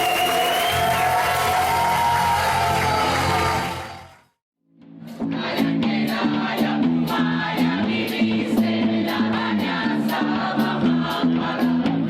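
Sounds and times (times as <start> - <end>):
choir singing held chords: 5.1 - 12.0.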